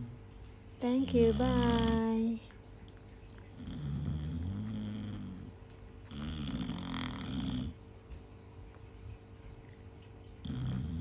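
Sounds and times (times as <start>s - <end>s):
dog snoring loudly: 1.0s - 2.2s, 3.5s - 7.8s, 10.4s - 11.0s.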